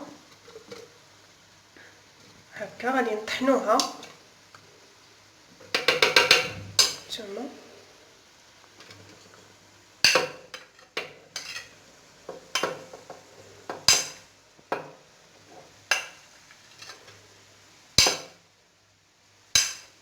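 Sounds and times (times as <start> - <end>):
utensil knocking against dishes: 5.7 - 6.9.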